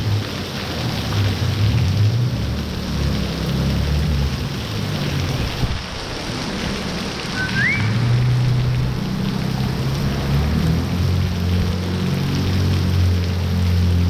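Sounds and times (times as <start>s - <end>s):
heavy rain pouring: 0.0s - 14.0s
low rumble: 6.2s - 11.9s
short rising whistle: 7.3s - 8.4s.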